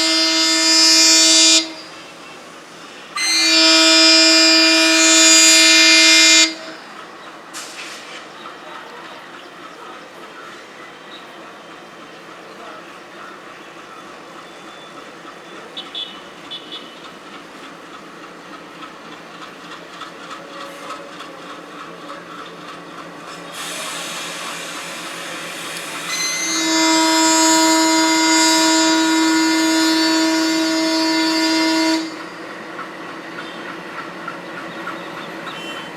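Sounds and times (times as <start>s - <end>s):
locomotive horn blast: 0.0s - 2.2s, 3.2s - 7.0s, 23.6s - 32.6s
train running noise: 0.0s - 35.9s
rushing air hiss: 7.5s - 8.4s, 23.2s - 29.8s.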